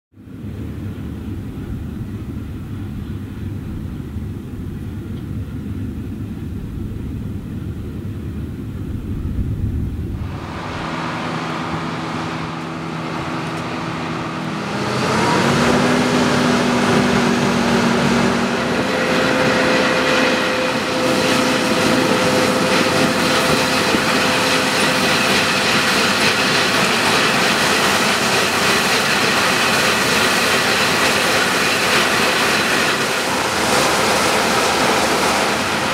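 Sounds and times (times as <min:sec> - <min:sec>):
whining engine and machinery: 0:00.2 - 0:35.9
low rumble: 0:01.1 - 0:25.2.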